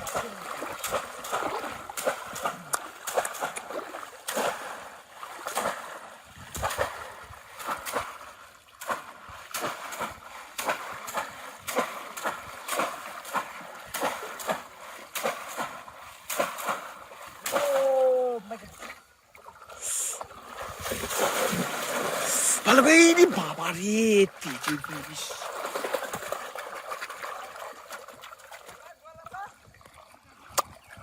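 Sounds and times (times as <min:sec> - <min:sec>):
water splashing and sloshing: 0:00.0 - 0:31.0.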